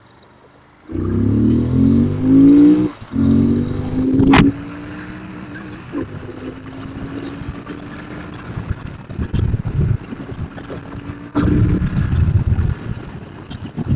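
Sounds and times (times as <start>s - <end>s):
motorcycle engine revving: 0.9s - 12.8s.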